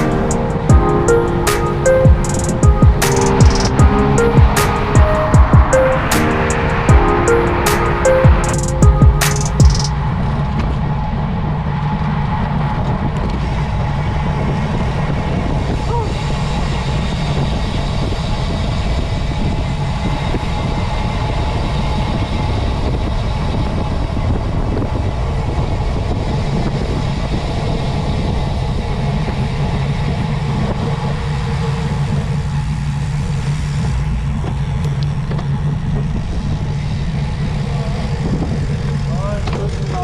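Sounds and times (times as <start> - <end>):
motorcycle engine humming: 0.0 - 20.3, 29.9 - 40.0
wind noise: 0.0 - 32.6.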